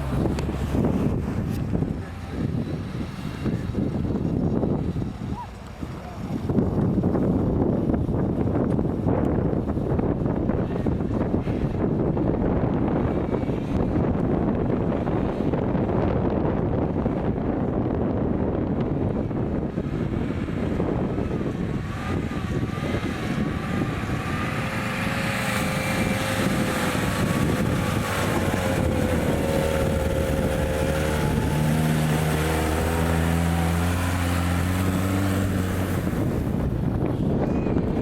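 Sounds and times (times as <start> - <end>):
vehicle engine revving: 0.0 - 7.3, 19.6 - 37.4
rough rumbling noise: 0.0 - 38.0.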